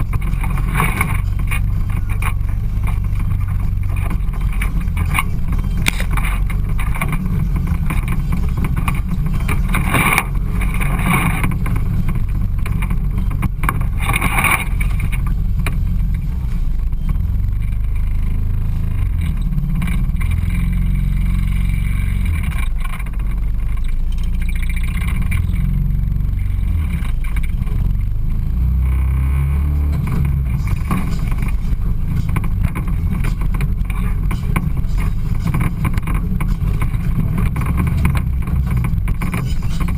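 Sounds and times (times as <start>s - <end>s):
off-road vehicle engine running: 0.0s - 39.9s.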